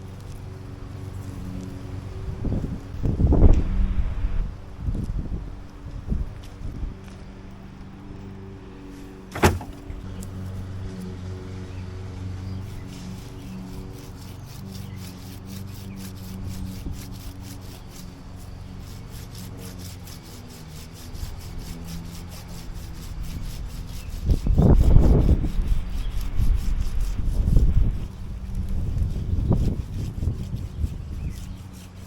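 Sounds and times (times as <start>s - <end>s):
lawn mower engine running: 0.0s - 3.0s, 7.2s - 24.1s
wind buffeting microphone: 1.1s - 7.6s, 22.7s - 32.0s.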